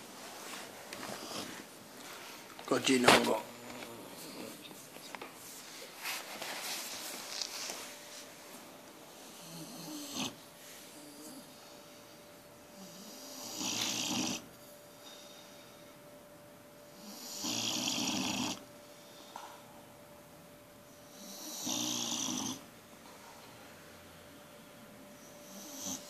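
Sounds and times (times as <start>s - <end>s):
dog snoring: 1.0s - 1.6s, 9.1s - 11.7s, 12.7s - 14.5s, 16.9s - 18.7s, 21.1s - 22.7s, 25.2s - 26.0s.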